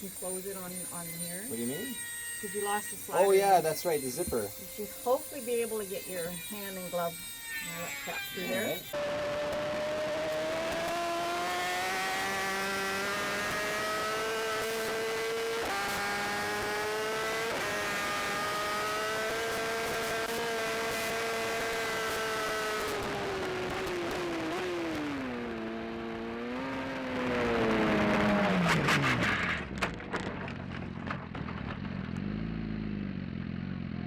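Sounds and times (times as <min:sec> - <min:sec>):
motorcycle engine revving: 0:08.4 - 0:34.0.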